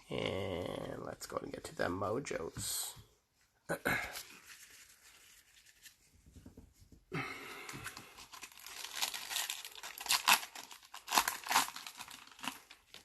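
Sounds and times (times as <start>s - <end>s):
card pack wrapper tearing and crinkling: 7.7s - 13.0s.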